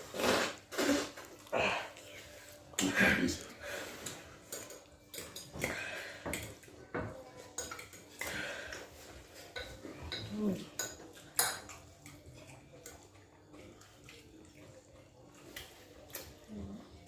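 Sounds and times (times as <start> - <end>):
cutlery clinking on plates: 4.0 - 13.1.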